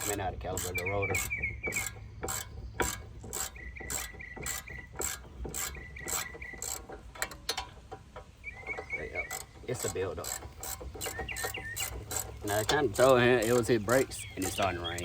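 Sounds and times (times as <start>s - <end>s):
hand ratchet clicking: 0.0s - 15.0s.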